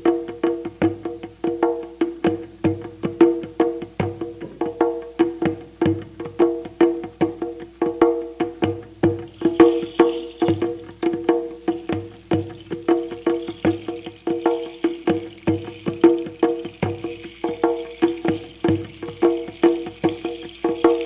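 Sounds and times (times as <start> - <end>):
quick struck percussion notes: 9.2 - 21.0
brief hiss: 9.3 - 16.6.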